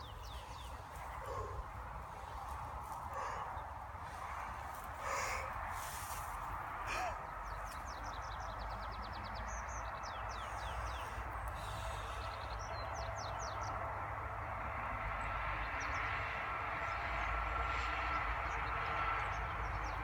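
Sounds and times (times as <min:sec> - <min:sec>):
small birds chirping: 0:00.0 - 0:13.8.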